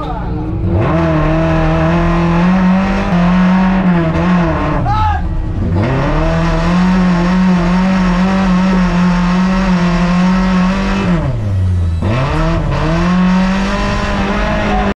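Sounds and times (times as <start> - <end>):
race car engine at high revs: 0.0 - 14.9.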